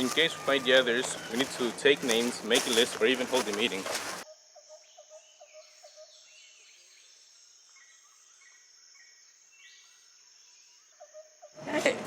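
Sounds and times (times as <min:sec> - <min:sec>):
bird chirps: 0:04.3 - 0:11.6.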